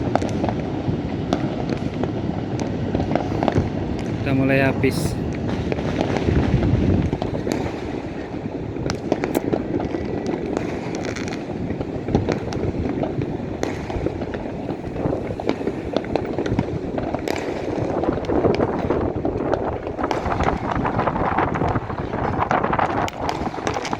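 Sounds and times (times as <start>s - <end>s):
fireworks bangs: 0.0s - 23.9s
fireworks crackling: 0.0s - 23.9s.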